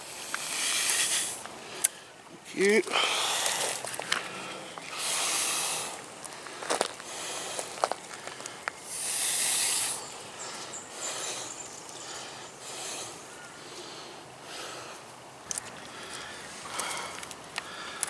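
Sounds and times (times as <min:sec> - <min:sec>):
man breathing hard: 0:00.4 - 0:15.0, 0:15.8 - 0:18.0.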